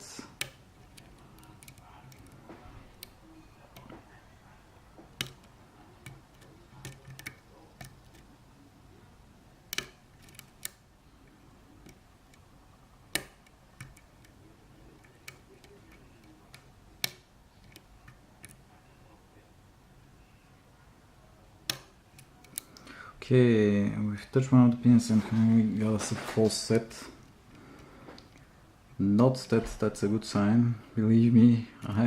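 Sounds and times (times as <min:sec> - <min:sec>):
lock picks clicking and scraping: 0:00.4 - 0:03.9, 0:05.2 - 0:08.3, 0:09.7 - 0:10.8, 0:21.7 - 0:22.8.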